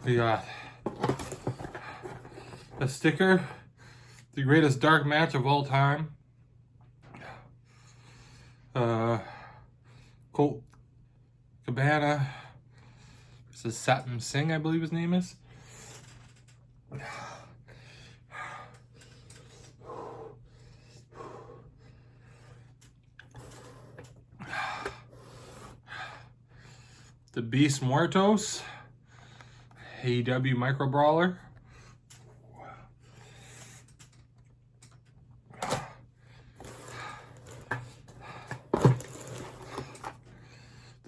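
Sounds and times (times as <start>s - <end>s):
packaging rustling: 0.8s - 2.8s, 36.6s - 40.2s.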